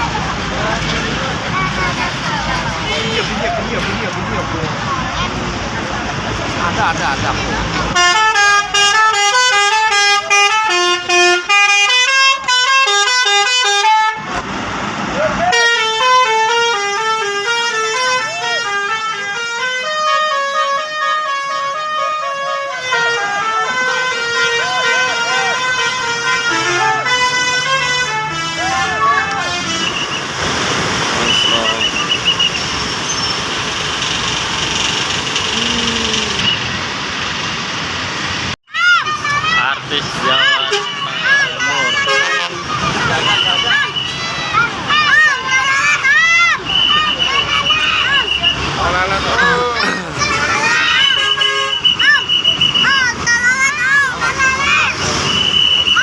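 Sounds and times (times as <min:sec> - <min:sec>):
roadside vehicle noise: 0:00.0 - 0:56.0
multi-tone musical bus horn: 0:07.9 - 0:14.3, 0:15.5 - 0:30.3, 0:40.2 - 0:44.4, 0:50.5 - 0:53.0.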